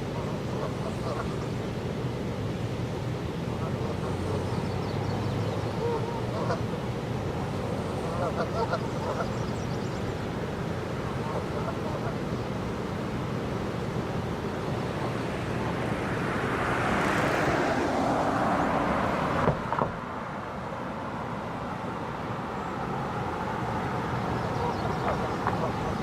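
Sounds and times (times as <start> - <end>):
steady traffic noise: 0.0 - 26.0
vehicle passing by: 14.4 - 26.0.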